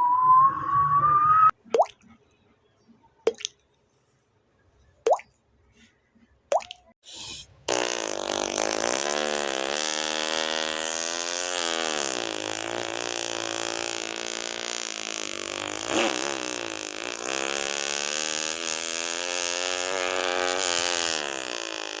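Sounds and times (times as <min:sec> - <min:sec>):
droning vocal buzz: 0:07.7 - 0:22.0.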